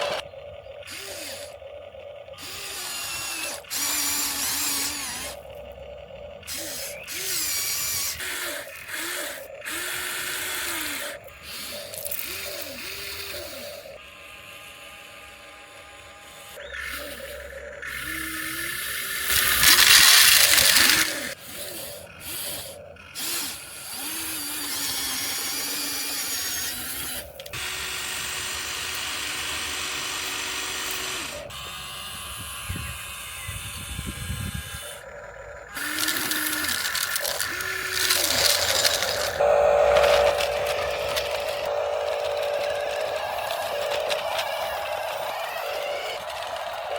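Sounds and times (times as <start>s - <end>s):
small electric motors whining: 0.0s - 46.9s
loud scraping: 35.8s - 46.9s.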